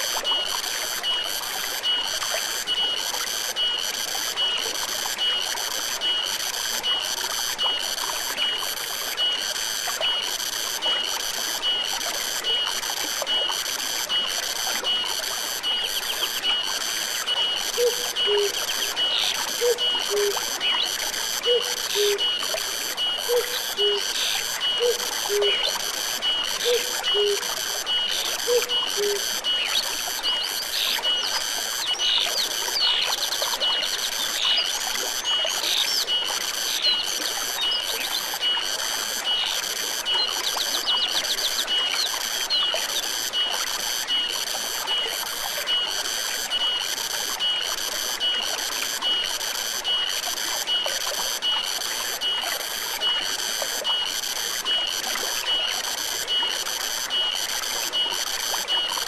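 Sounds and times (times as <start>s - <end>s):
stream trickling: 0.0s - 59.0s
low calls: 17.8s - 22.4s, 26.5s - 27.5s.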